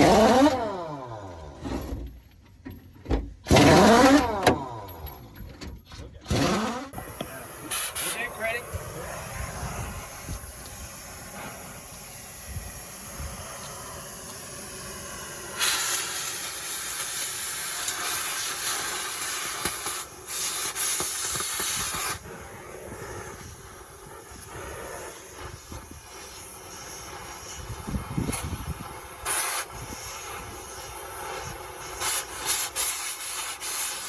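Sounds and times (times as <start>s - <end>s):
faint knocks and work noise: 1.6s - 3.4s
compressed air hissing: 6.3s - 34.0s.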